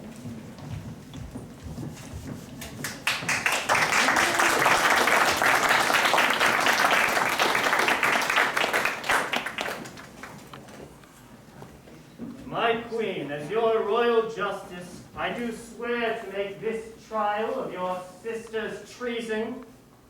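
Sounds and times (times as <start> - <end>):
audience applauding: 2.8 - 10.5.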